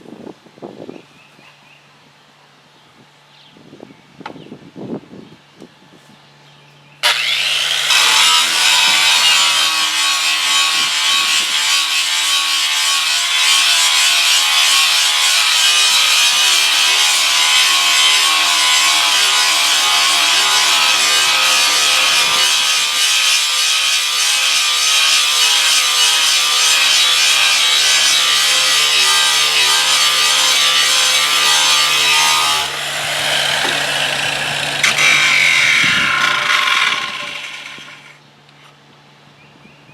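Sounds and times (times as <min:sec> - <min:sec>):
power tool rasping on surface: 0:07.0 - 0:38.2.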